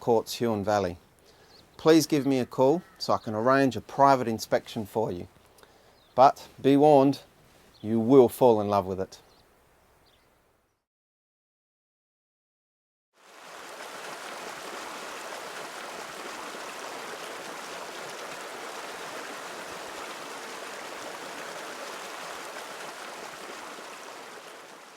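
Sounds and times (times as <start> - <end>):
river water rushing: 13.2 - 24.9.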